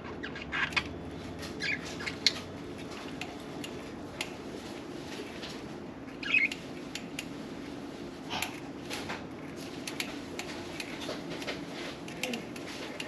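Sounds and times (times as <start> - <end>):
budgerigars chirping: 0.2 - 0.9, 1.6 - 2.4, 6.2 - 6.6.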